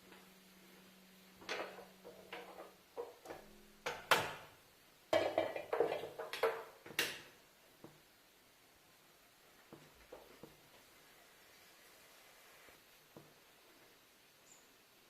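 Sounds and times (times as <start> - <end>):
faint steady hum: 0.0 - 15.0
dishes and utensils clattering: 5.2 - 7.1.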